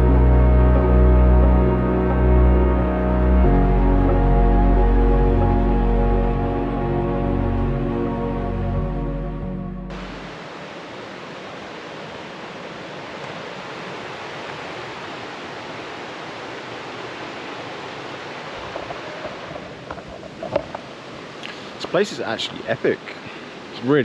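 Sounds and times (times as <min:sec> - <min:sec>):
flowing water rushing: 0:09.8 - 0:24.0.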